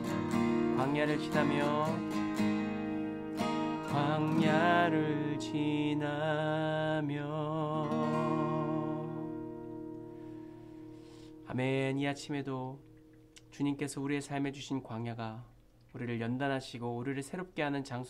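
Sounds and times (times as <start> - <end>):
strummed acoustic guitar: 0.0 - 13.3
person singing slowly: 0.8 - 2.2, 3.8 - 9.9.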